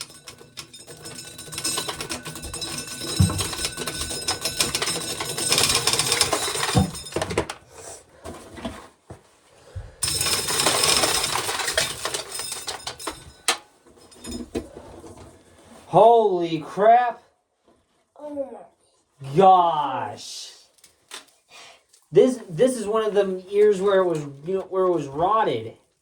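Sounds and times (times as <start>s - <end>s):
corn sheller rattling: 0.0s - 7.6s, 10.0s - 14.5s
kernels clattering: 0.0s - 7.6s, 10.0s - 14.6s.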